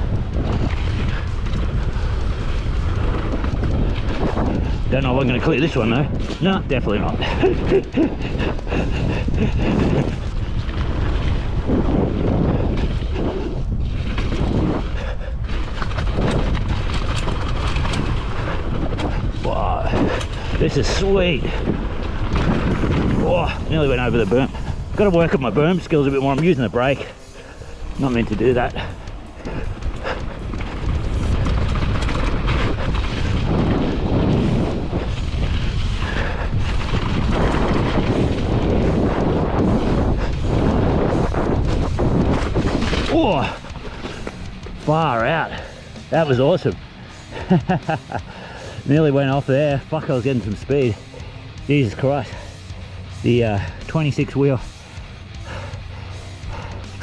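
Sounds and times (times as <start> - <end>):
bike clicks and rattles: 0.0 - 57.0
wind buffeting microphone: 0.0 - 57.0.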